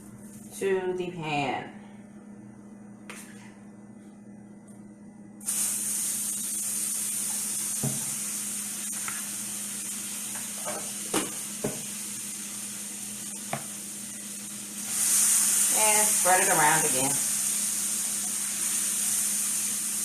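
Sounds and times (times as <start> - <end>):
butter sizzling in a pan: 5.4 - 20.0.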